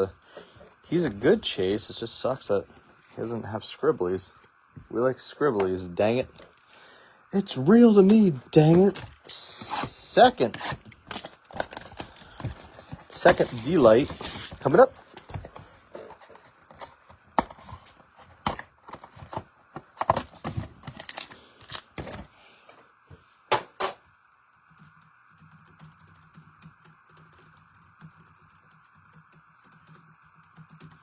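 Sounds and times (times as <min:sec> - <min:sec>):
packaging crinkling and tearing: 0:07.4 - 0:22.3.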